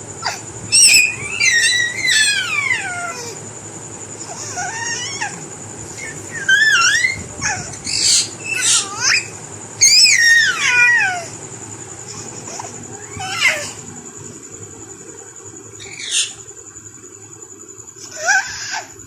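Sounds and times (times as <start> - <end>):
faint steady high whine: 0.0 - 19.0
high squeaky parrot calls: 0.7 - 3.3, 6.0 - 11.2, 15.8 - 16.4.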